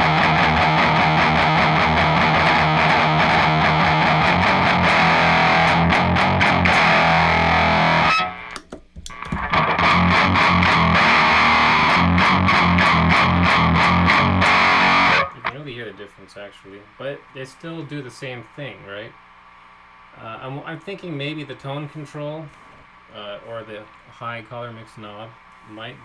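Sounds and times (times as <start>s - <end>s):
distorted electric guitar chugging: 0.0s - 15.7s.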